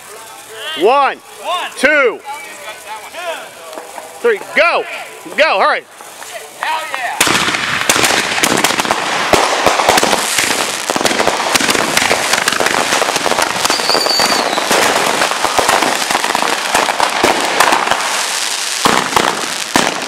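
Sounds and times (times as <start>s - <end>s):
fireworks crackling: 0.0s - 20.0s
high firework whistle: 13.4s - 15.7s.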